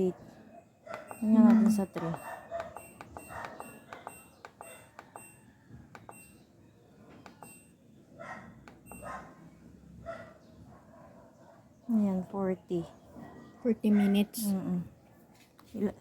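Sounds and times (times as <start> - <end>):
washing machine panel beeping: 0.9 - 6.6, 7.2 - 7.9, 8.6 - 9.3.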